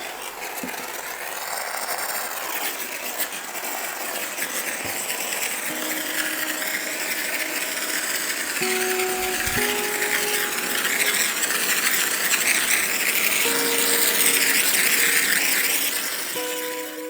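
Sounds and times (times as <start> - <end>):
steady hiss: 0.0 - 17.0
background music: 5.7 - 17.0.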